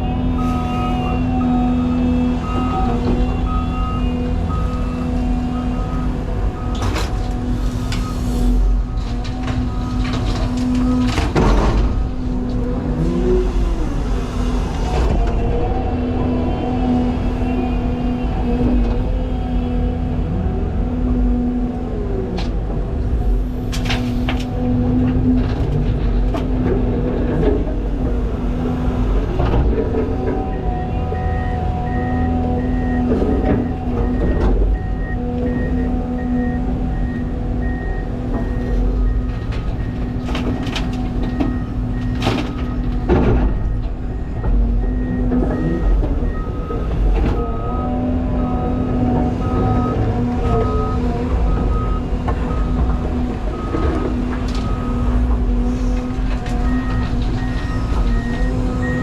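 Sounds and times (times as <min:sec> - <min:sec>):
reversing beeper: 0:00.0 - 0:07.0, 0:30.5 - 0:40.6, 0:43.6 - 0:52.8, 0:56.6 - 0:59.0
excavator diesel engine running: 0:00.0 - 0:59.0.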